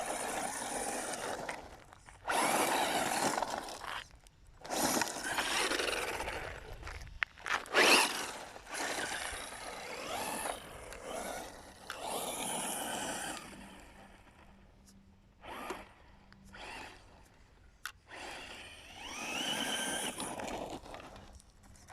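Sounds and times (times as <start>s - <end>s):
electric motor whining: 0.0s - 4.0s, 4.6s - 7.0s, 7.7s - 14.5s, 15.4s - 17.1s, 18.1s - 21.4s
tyres scrabbling on dirt: 0.0s - 13.9s, 18.9s - 21.9s.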